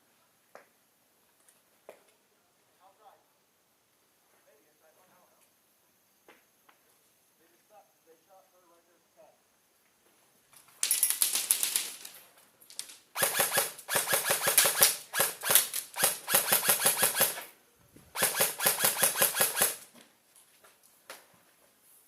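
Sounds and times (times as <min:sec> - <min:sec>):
airsoft rifle bursts: 0:13.1 - 0:19.9.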